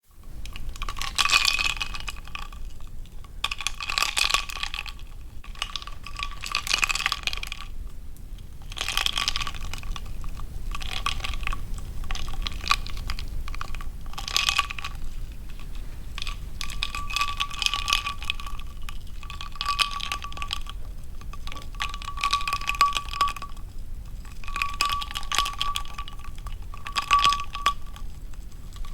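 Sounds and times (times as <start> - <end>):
ice cubes clinking in glass: 10.7 - 15.0, 16.1 - 23.6, 24.3 - 28.9.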